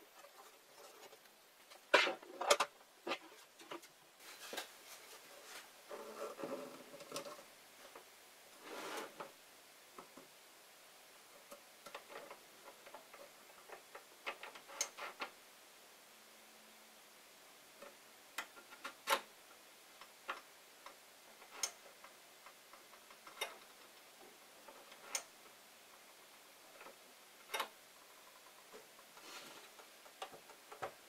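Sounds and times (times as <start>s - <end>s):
scraping rustle: 0.0s - 9.4s, 26.7s - 31.0s.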